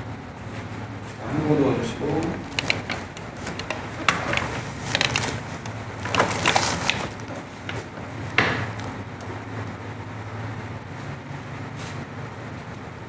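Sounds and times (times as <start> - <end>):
drop table clacks and cracks: 2.1 - 9.0.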